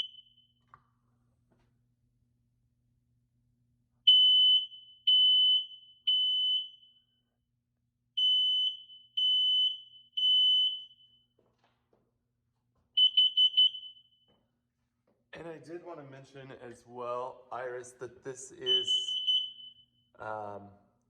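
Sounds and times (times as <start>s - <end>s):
smoke alarm beeping: 0.0s - 0.6s, 4.1s - 7.2s, 8.2s - 11.4s, 13.0s - 14.3s, 18.6s - 20.1s.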